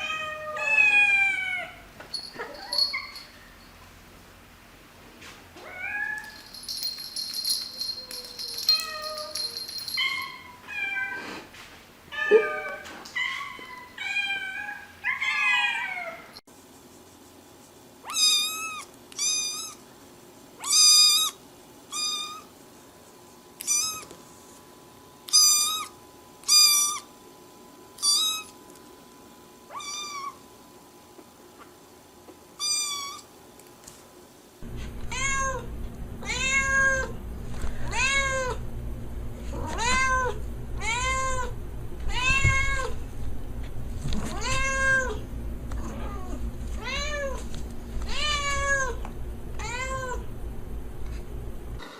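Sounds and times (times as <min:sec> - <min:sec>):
cats meowing: 0:00.0 - 0:01.8, 0:12.2 - 0:16.3, 0:39.5 - 0:43.0, 0:44.2 - 0:45.2.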